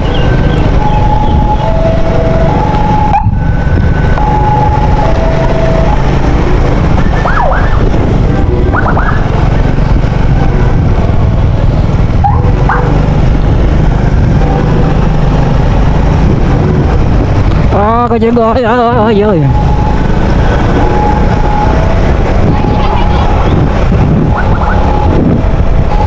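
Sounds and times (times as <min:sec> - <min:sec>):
ambulance siren: 0:00.0 - 0:13.3, 0:18.9 - 0:26.0
vehicle rumble: 0:00.0 - 0:26.0.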